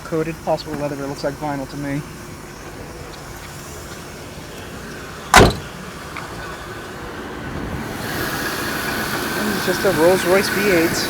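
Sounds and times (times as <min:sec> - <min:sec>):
heavy car door shutting: 0:05.2 - 0:06.4.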